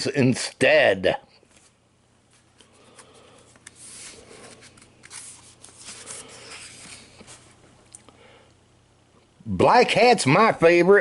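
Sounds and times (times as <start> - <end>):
paper rustling and crinkling: 1.5 - 7.6.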